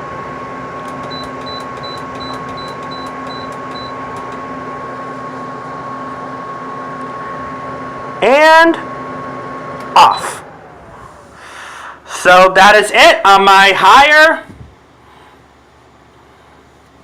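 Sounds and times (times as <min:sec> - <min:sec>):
window air conditioner running: 0:00.0 - 0:17.0
control panel beeps: 0:00.9 - 0:04.4, 0:10.0 - 0:10.4.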